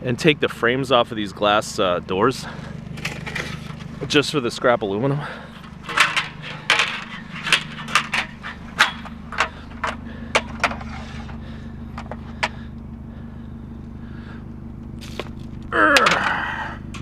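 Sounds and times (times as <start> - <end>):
steady low hum: 0.0 - 17.0
scrap metal clanking: 2.4 - 4.2, 5.2 - 12.6.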